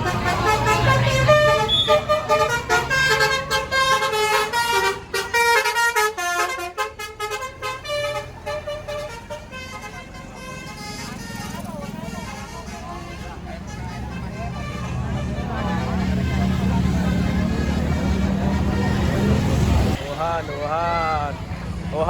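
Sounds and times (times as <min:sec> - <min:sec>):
multi-tone bus horn tune: 0:00.0 - 0:21.3.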